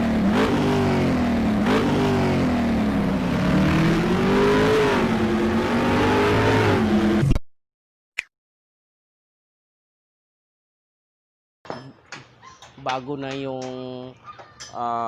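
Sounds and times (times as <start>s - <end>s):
car engine revving: 0.0s - 7.4s.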